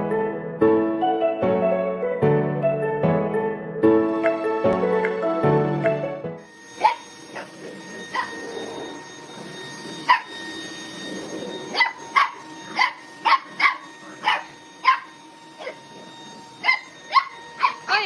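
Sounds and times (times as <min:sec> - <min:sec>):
dog barking in high-pitched yips: 0:06.8 - 0:07.5, 0:08.1 - 0:08.4, 0:10.1 - 0:10.3, 0:11.7 - 0:15.8, 0:16.6 - 0:18.0.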